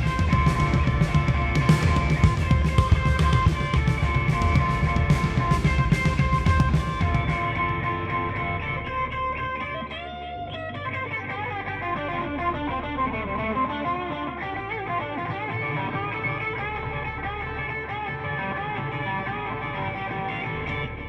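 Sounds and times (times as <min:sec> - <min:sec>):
bass line: 0:00.0 - 0:13.7
plucked guitar notes: 0:00.0 - 0:21.0.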